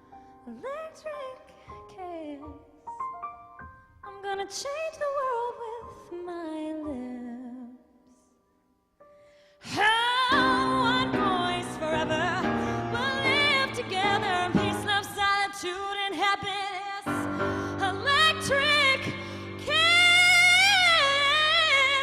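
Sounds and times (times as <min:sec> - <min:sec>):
piano chords: 0:09.7 - 0:22.0
woman singing with vibrato: 0:09.7 - 0:22.0.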